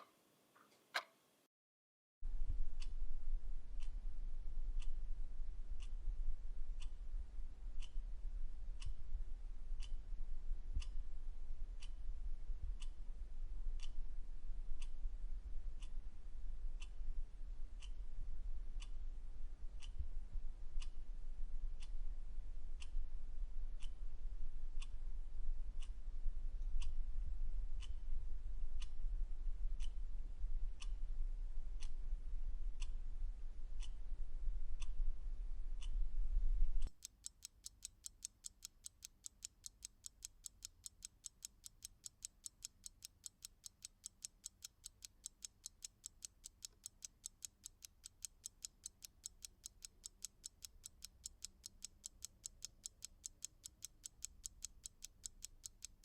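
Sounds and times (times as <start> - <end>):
constant low hum: 2.3 - 37.0
clock ticking: 36.8 - 56.0.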